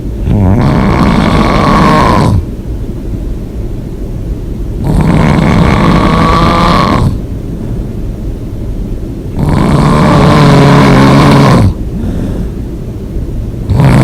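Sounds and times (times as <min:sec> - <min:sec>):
person snoring loudly: 0:00.2 - 0:02.5, 0:04.8 - 0:07.2, 0:09.4 - 0:12.5, 0:13.7 - 0:14.0
quiet breathing: 0:06.6 - 0:08.2, 0:11.6 - 0:13.0.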